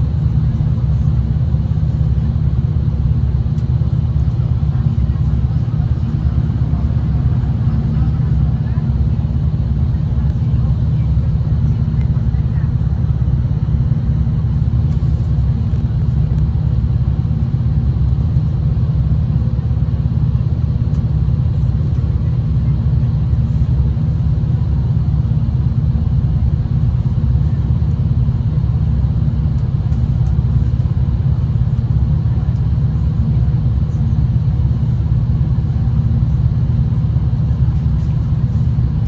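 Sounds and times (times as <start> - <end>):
diesel train rumbling: 0.0 - 39.0.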